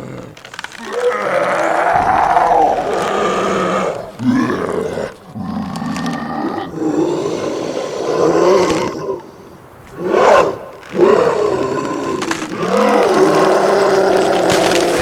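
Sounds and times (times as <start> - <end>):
werewolf roar: 0.8 - 9.0.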